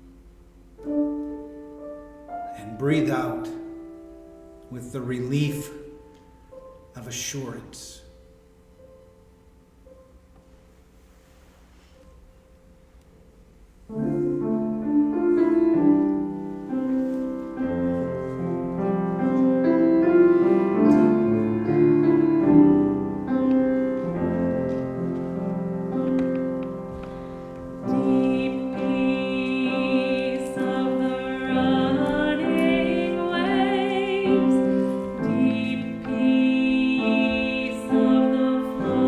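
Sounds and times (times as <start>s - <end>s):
piano chords: 0.0s - 39.0s
person singing: 27.8s - 39.0s.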